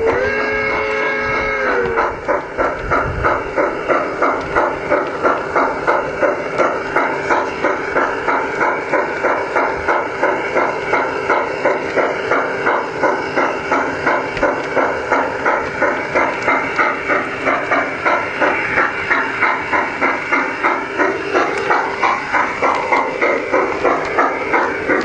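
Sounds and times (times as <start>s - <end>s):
model steam locomotive chuffing: 0.0s - 25.0s.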